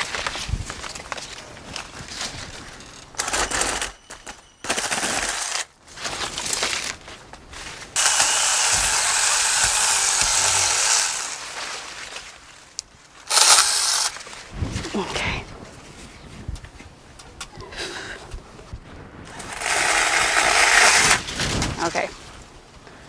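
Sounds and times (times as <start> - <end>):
electric chainsaw cutting branch: 4.7 - 5.7, 8.0 - 12.2, 13.3 - 14.3, 19.3 - 21.4.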